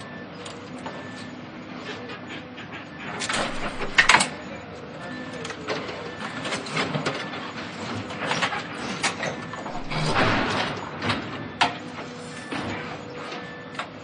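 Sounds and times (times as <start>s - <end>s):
demolition machinery: 3.1s - 4.5s, 5.1s - 14.0s.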